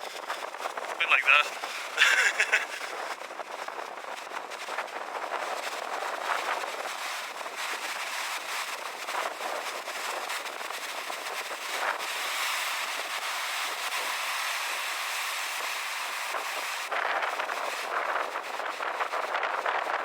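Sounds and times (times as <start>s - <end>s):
strong wind: 0.0s - 13.1s, 16.3s - 20.0s.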